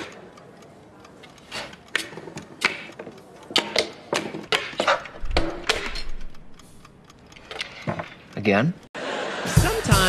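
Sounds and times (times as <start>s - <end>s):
sharp clicks taps and knocks: 0.0s - 8.5s.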